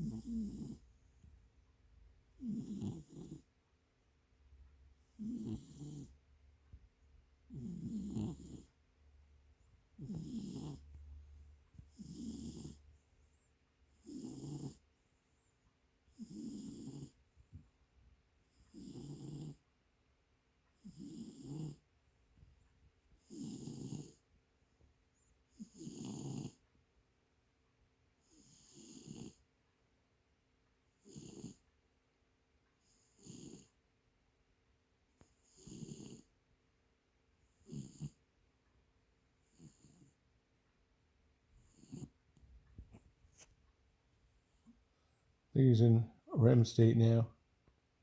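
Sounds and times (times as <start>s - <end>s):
cat snoring softly: 0.0s - 1.4s, 2.3s - 3.5s, 5.0s - 6.3s, 7.4s - 8.8s, 9.6s - 17.6s, 18.4s - 19.6s, 20.7s - 21.9s, 23.2s - 24.3s, 25.2s - 26.6s, 28.2s - 29.5s, 30.9s - 31.7s, 32.8s - 33.8s, 35.2s - 36.4s, 37.4s - 38.3s, 39.4s - 40.2s, 41.5s - 42.2s.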